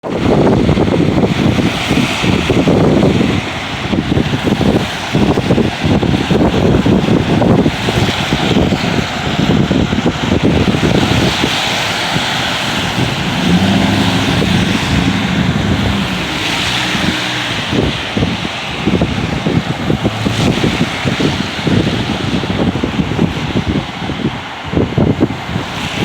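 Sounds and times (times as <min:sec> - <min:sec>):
wind buffeting microphone: 0:00.0 - 0:26.0
low hum: 0:13.0 - 0:18.2.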